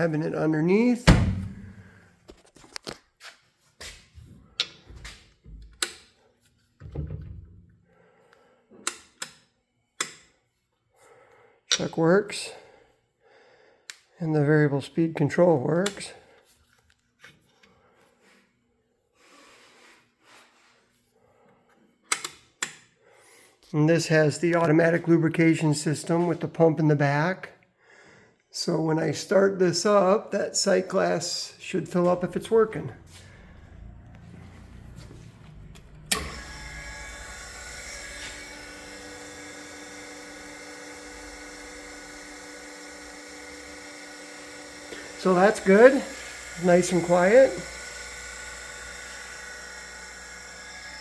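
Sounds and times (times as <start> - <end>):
grinder motor whining: 32.2 - 51.0.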